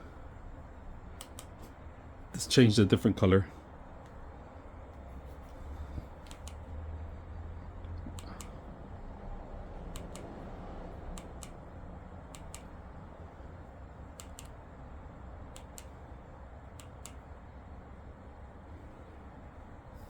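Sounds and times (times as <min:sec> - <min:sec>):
low room hum: 0:00.0 - 0:20.0
remote control buttons clicking: 0:01.1 - 0:01.8, 0:06.1 - 0:06.7, 0:08.1 - 0:08.7, 0:09.9 - 0:10.5, 0:11.1 - 0:12.8, 0:14.1 - 0:14.6, 0:15.5 - 0:16.0, 0:16.7 - 0:17.3.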